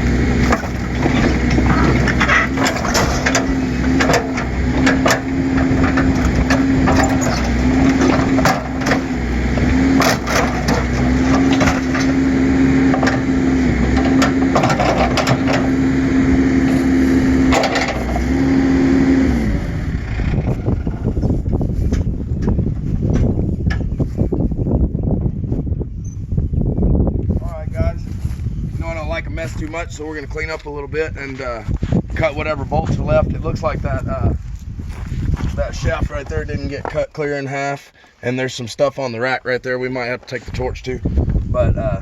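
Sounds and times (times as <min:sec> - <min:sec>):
heavy machine engine under load: 0:00.0 - 0:24.1
metal cracking and snapping: 0:00.4 - 0:09.1, 0:10.0 - 0:12.2.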